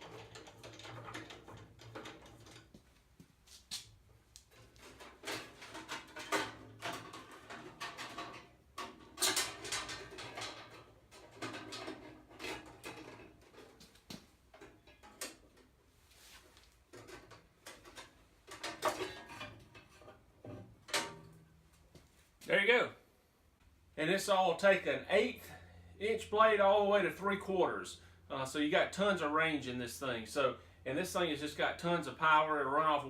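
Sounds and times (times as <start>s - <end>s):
metallic clicks and rattles: 0.0s - 2.8s.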